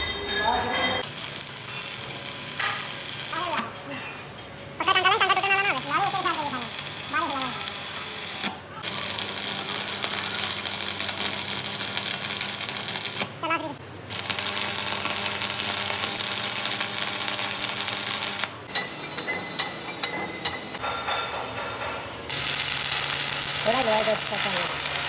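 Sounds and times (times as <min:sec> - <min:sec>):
lathe cutting steel hiss: 0:14.2 - 0:25.0.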